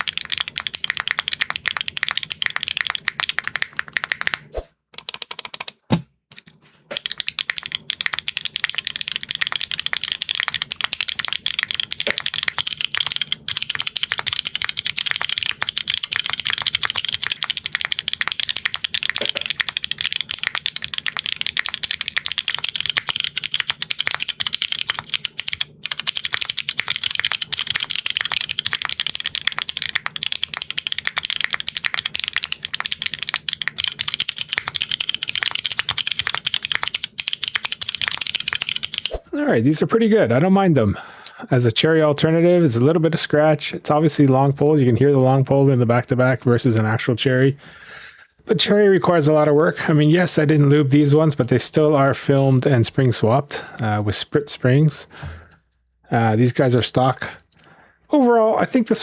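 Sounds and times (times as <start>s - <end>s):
mechanical keyboard typing: 0.0s - 39.2s, 42.2s - 47.3s.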